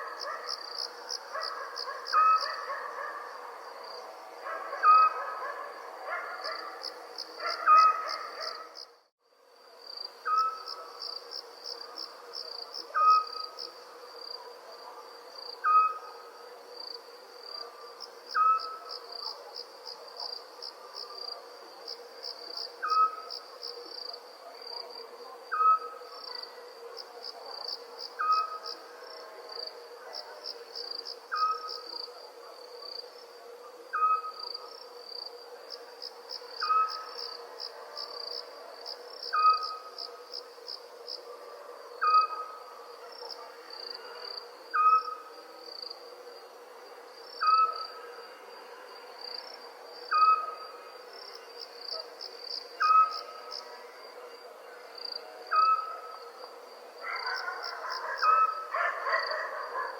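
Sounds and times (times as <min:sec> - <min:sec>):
crickets chirping: 0:00.0 - 0:59.9
owl calling: 0:02.0 - 0:02.8, 0:07.4 - 0:08.6, 0:13.0 - 0:13.4, 0:15.6 - 0:16.1, 0:18.4 - 0:18.9, 0:33.9 - 0:34.4, 0:36.6 - 0:37.1, 0:44.8 - 0:45.3
faint drone: 0:09.4 - 0:58.0.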